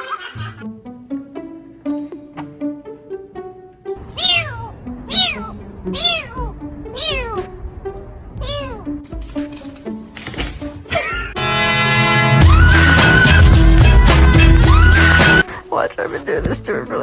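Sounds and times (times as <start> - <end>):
background music: 0.0 - 17.0
cat meowing: 4.1 - 7.5, 8.4 - 9.0.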